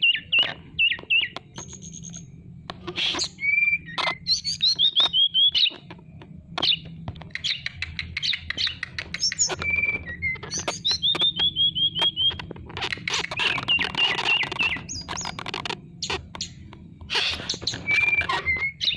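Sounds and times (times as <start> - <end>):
songbird whistled notes: 0.0 - 2.3, 3.0 - 5.8, 6.6 - 12.4, 17.2 - 18.9
sharp clicks: 0.4 - 18.2.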